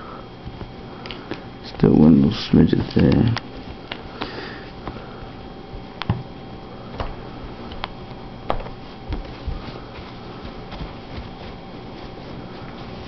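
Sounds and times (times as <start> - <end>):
faint room hum: 0.0 - 13.0.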